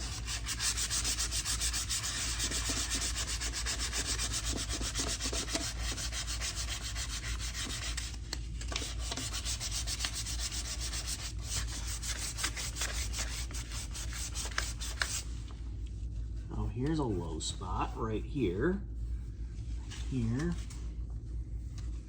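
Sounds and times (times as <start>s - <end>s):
sandpaper rubbing on metal: 0.0s - 8.2s, 8.8s - 15.3s.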